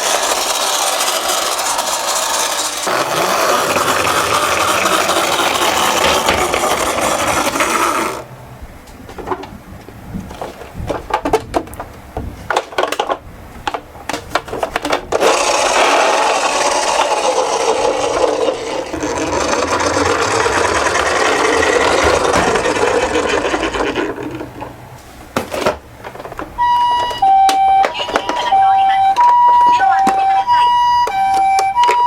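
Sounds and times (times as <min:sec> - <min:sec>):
toy cars rolling down a slope: 0:00.0 - 0:08.2, 0:14.3 - 0:24.7
toy two-tone siren: 0:26.6 - 0:32.0.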